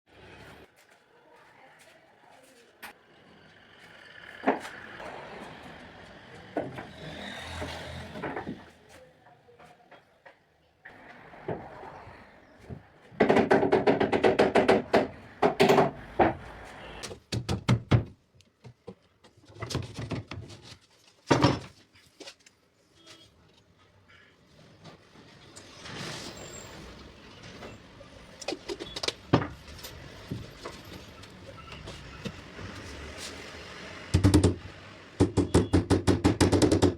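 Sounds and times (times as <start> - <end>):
knocks and thuds on wood: 13.2 - 16.4, 17.2 - 19.0, 34.2 - 34.6, 35.2 - 36.9.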